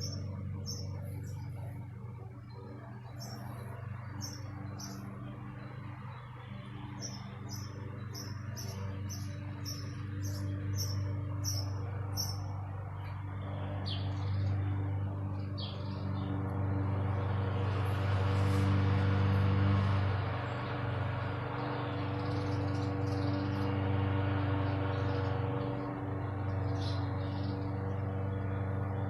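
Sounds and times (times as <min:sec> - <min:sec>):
songbird chirping: 0:00.0 - 0:16.4
steady low hum: 0:00.0 - 0:29.0.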